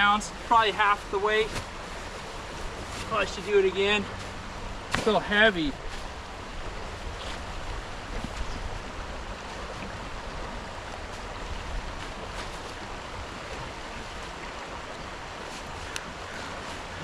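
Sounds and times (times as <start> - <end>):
creek water rushing: 0.0 - 17.0.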